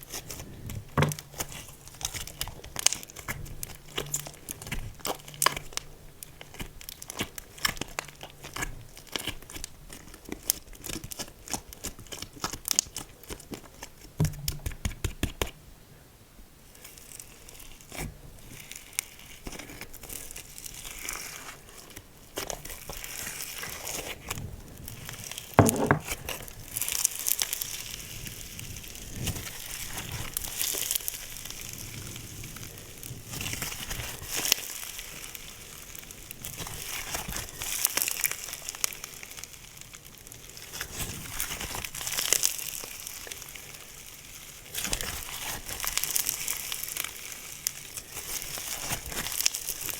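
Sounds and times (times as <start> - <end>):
slime squishing: 0.0 - 15.6, 16.7 - 49.9.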